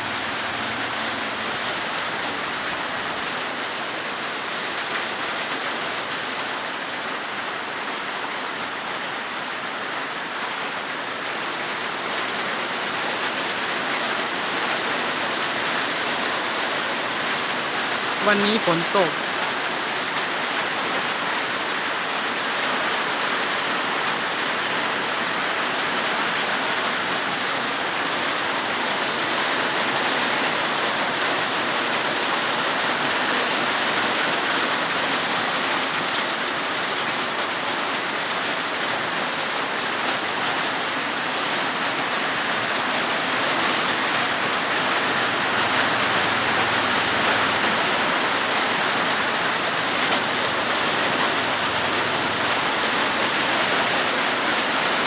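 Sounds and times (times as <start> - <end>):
rain falling steadily: 0.0 - 55.0.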